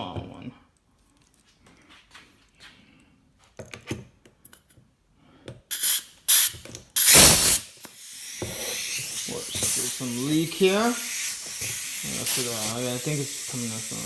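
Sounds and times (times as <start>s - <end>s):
air leak hissing: 5.7s - 14.0s
compressed air blasts: 5.7s - 14.0s.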